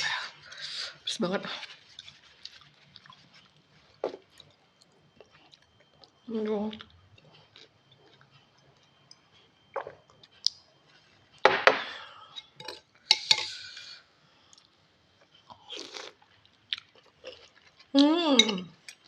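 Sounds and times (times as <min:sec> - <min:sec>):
eating soup: 0:12.2 - 0:19.0.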